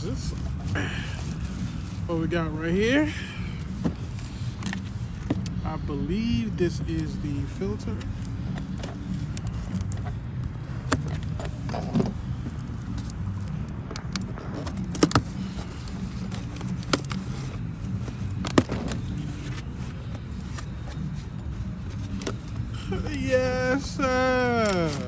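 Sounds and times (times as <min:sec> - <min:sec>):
packaging clicks and crinkles: 0:08.0 - 0:25.0.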